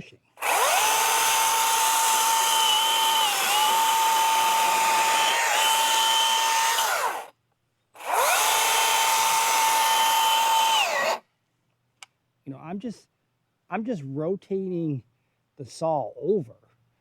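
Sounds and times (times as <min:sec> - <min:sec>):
electric chainsaw running: 0:00.4 - 0:07.3, 0:08.0 - 0:11.2.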